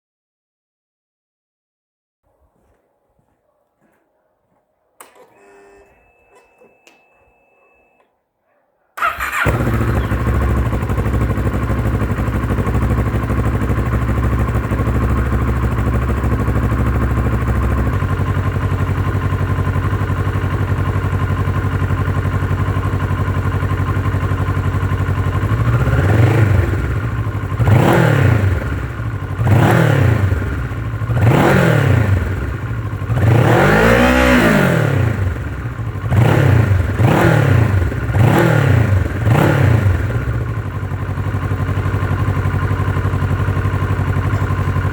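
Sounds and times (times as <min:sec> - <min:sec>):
motorcycle engine idling and revving: 0:09.0 - 0:44.9.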